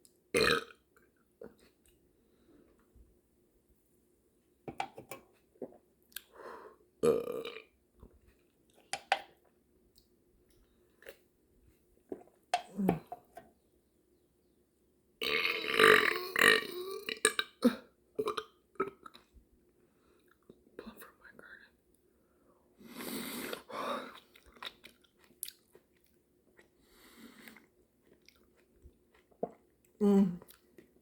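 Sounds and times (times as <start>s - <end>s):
wet smacking and chewing: 24.1s - 26.8s, 27.4s - 31.0s.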